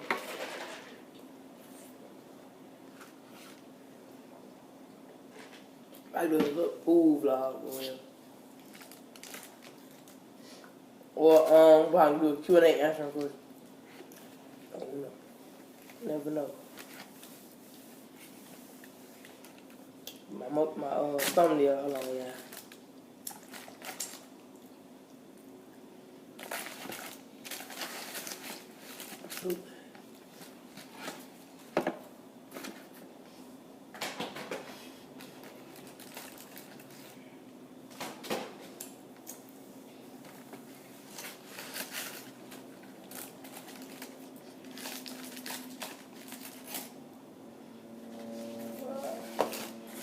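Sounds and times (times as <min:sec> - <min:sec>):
faint steady hum: 0:00.0 - 0:50.0.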